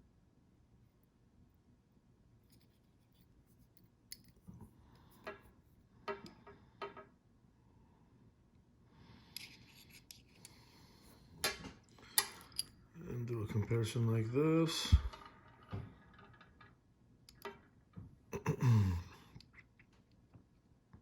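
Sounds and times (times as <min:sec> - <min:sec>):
light clicks and taps of metal pens: 0:09.3 - 0:10.6.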